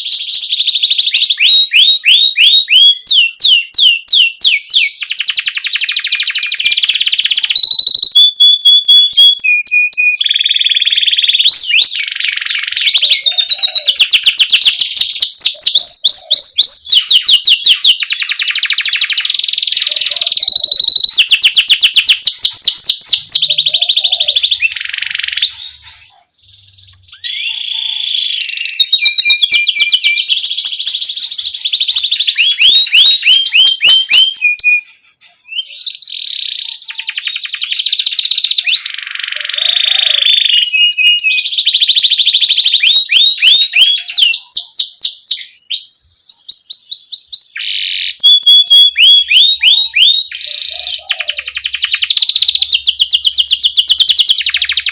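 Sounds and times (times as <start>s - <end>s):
canary singing: 0.0s - 54.9s.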